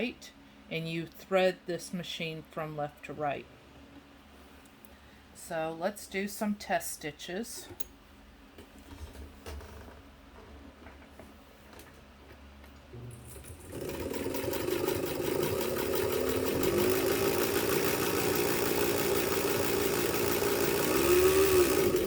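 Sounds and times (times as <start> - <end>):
electric sewing machine running: 13.1 - 22.0.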